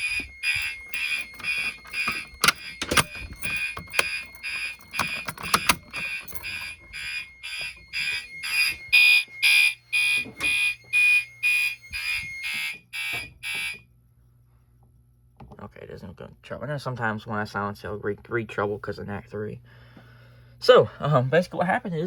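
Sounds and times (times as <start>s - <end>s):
fire alarm horns pulsing: 0.0s - 13.9s.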